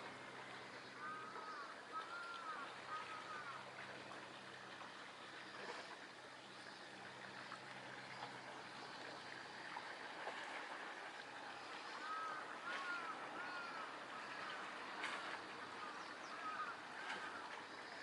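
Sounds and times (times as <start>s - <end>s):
water lapping against quay: 0.0s - 18.0s
bird calling: 0.8s - 3.6s, 11.6s - 18.0s.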